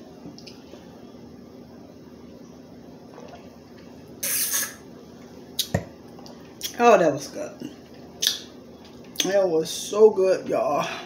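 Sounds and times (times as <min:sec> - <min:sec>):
hissing slurp: 0:04.2 - 0:04.8.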